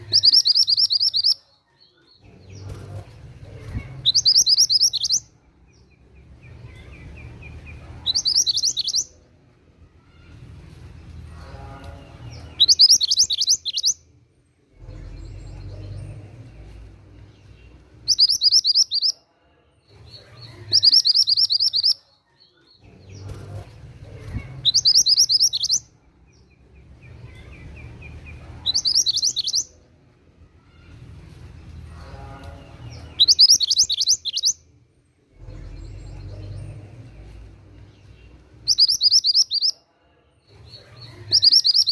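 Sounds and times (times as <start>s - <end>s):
songbird chirping: 0.0s - 41.9s
low background rumble: 14.0s - 18.2s, 34.7s - 38.8s.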